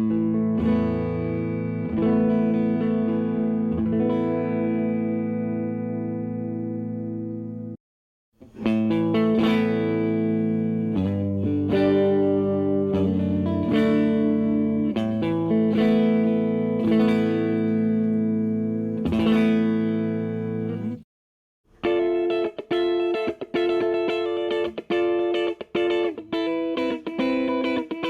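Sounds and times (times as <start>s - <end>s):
electric guitar strummed chords: 0.0s - 7.8s, 8.4s - 21.0s, 21.8s - 28.0s.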